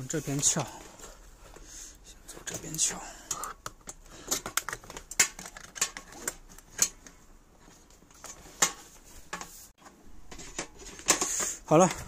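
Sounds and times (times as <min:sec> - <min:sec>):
plastic clicks and scrapes: 0:02.5 - 0:07.1.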